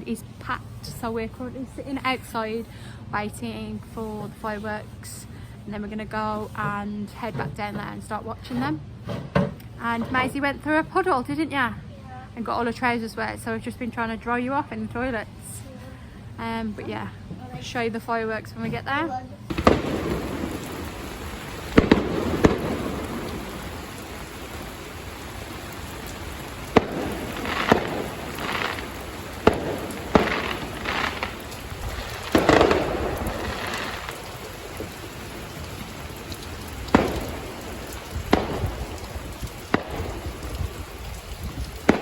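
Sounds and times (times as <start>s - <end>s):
fireworks bangs: 19.5s - 36.0s, 36.7s - 41.0s
steady hiss: 19.5s - 42.0s.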